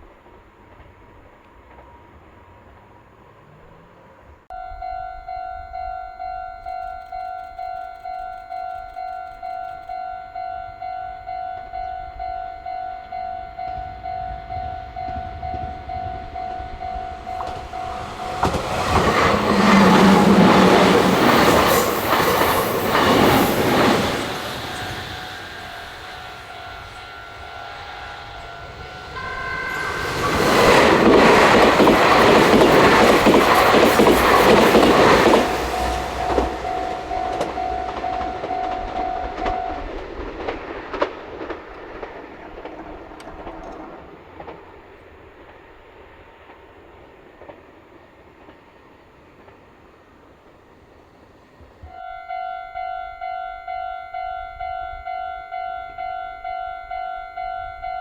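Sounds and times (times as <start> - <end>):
crossing warning bell dinging: 4.5 - 41.4, 51.8 - 58.0
train horn: 9.8 - 40.3, 51.8 - 58.0
train wheels clattering over rails: 13.6 - 50.7.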